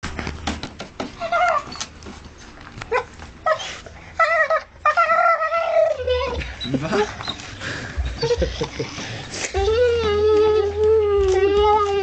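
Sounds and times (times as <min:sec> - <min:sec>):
dog whining: 0:01.2 - 0:02.0, 0:02.9 - 0:12.0.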